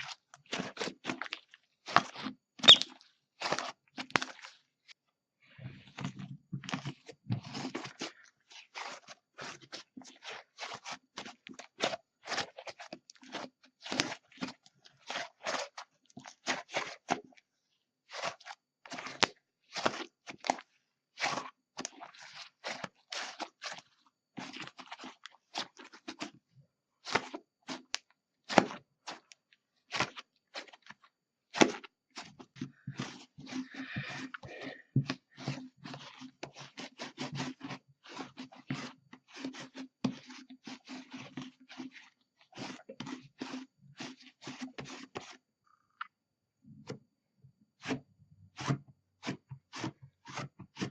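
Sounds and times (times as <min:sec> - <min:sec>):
slime squeezed by hand: 0:02.1 - 0:04.5.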